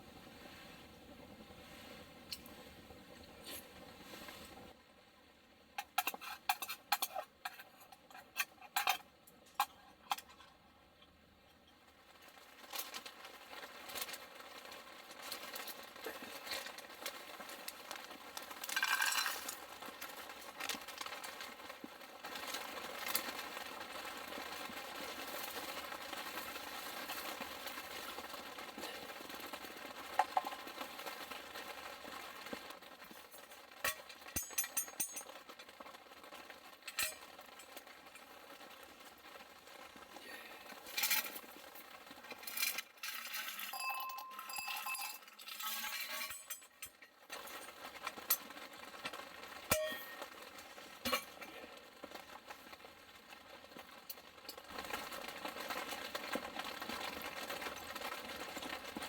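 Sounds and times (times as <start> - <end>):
cookware clinking: 33.9 - 35.4, 43.5 - 47.6, 49.7 - 50.3.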